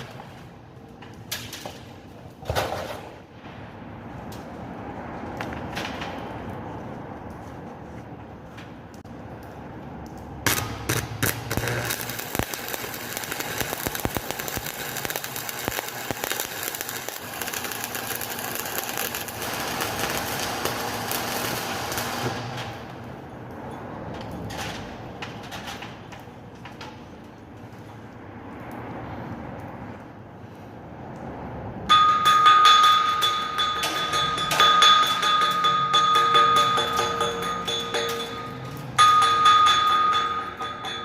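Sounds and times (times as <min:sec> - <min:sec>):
welding arc crackling: 0:09.0 - 0:23.2.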